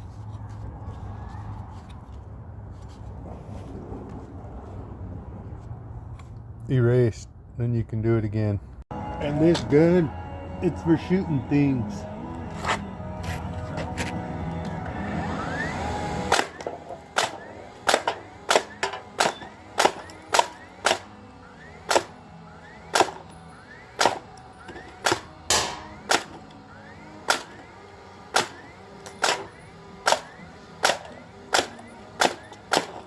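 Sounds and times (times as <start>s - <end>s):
nail gun firing: 16.3s - 21.1s, 21.8s - 22.2s, 22.9s - 23.3s, 24.0s - 26.5s, 27.2s - 27.6s, 28.3s - 33.0s.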